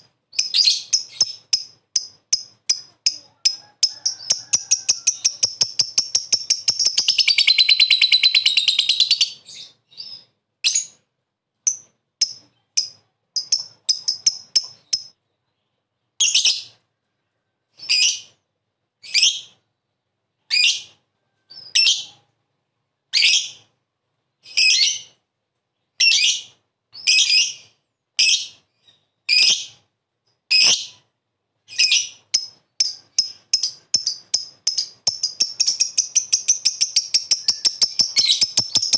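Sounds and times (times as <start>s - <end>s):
lovebird chattering trill: 0.3s - 9.7s, 11.7s - 15.1s, 31.7s - 38.9s
sharp high bird calls: 0.3s - 11.0s, 31.7s - 38.9s.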